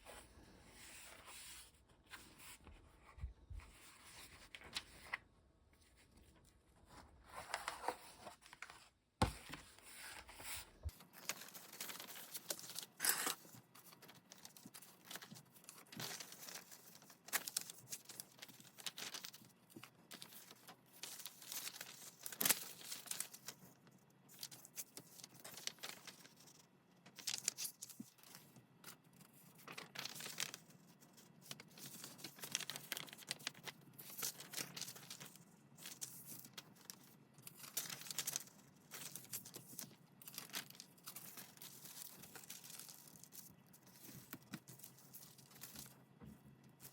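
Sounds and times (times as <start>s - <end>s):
paper tearing and crinkling: 11.1s - 13.5s.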